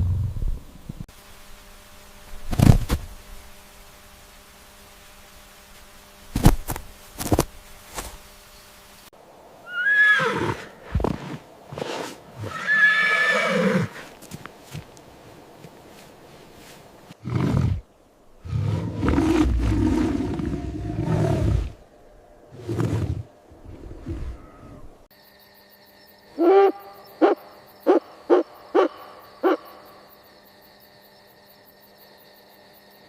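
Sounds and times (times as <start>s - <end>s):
horse neighing: 9.7s - 10.8s, 12.4s - 14.0s, 24.0s - 24.9s.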